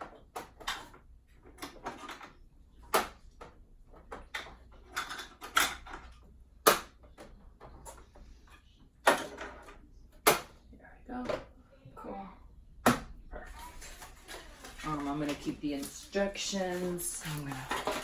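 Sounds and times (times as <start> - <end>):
rustling: 13.4 - 18.0.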